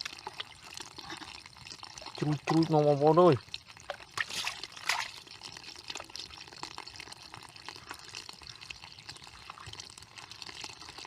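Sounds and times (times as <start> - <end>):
water dripping and trickling: 0.0 - 11.0
water splashing: 3.8 - 6.0.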